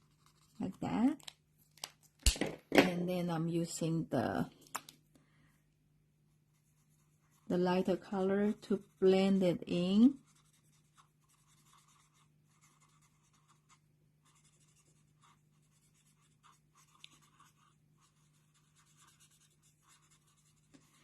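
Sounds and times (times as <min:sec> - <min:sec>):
marker strokes on paper: 0:06.5 - 0:21.0.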